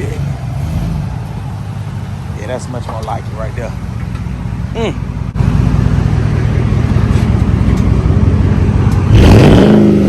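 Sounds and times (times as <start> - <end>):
loud engine revving: 0.0 - 1.3, 5.4 - 10.0.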